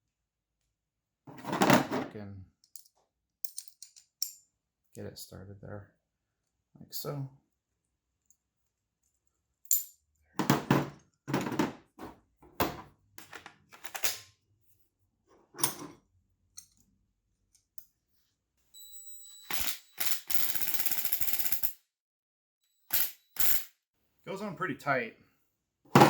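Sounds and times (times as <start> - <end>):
ratchet wrench clicking: 22.9 - 23.7.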